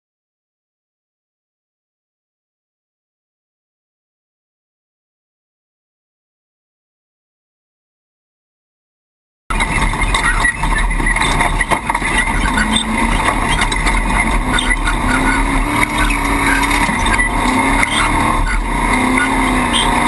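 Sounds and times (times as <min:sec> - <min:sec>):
knocks and rattles: 0:09.5 - 0:20.0
race truck engine rumbling: 0:09.5 - 0:20.0.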